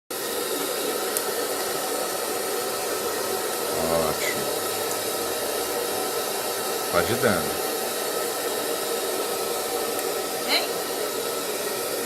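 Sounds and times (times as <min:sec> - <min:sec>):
hair dryer running: 0:00.2 - 0:12.0
short voice sound: 0:03.7 - 0:04.8, 0:06.9 - 0:07.6.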